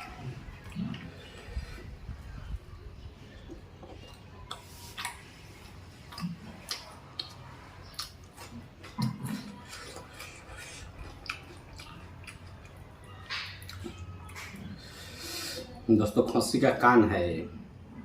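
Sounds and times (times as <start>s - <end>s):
person chewing: 3.4s - 15.7s
lip smacks: 3.5s - 5.3s, 6.0s - 15.0s.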